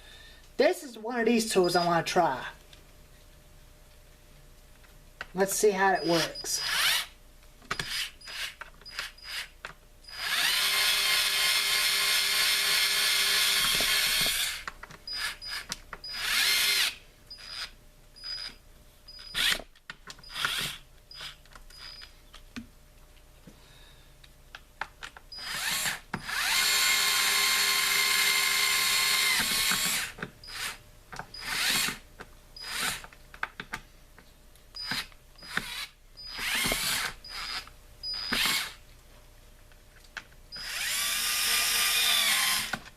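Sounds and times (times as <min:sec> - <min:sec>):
mini power tool running: 0:06.3 - 0:07.1, 0:07.8 - 0:09.5, 0:10.1 - 0:18.5, 0:19.1 - 0:19.6, 0:20.2 - 0:22.0, 0:25.4 - 0:30.8, 0:31.4 - 0:32.0, 0:32.6 - 0:33.0, 0:34.8 - 0:38.8, 0:40.6 - 0:42.8.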